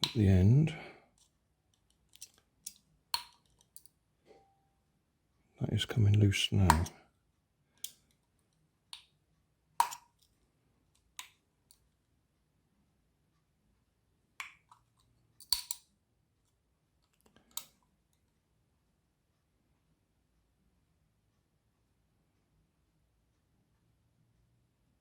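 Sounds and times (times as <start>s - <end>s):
sharp clicks and taps of handling: 0.0s - 0.2s, 14.4s - 15.8s.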